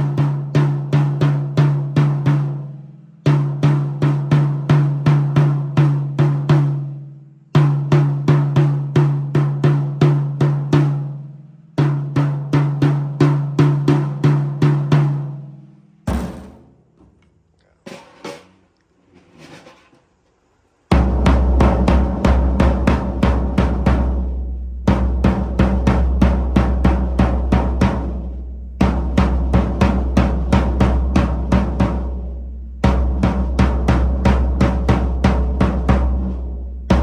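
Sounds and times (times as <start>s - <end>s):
drum struck with a stick: 16.1s - 17.2s, 17.8s - 18.7s, 20.9s - 37.0s
low thump: 16.1s - 17.2s.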